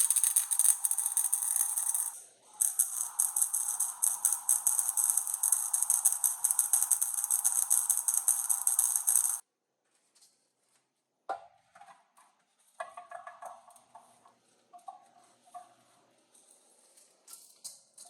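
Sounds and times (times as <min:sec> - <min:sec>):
metallic clinks and taps: 0:00.0 - 0:09.4.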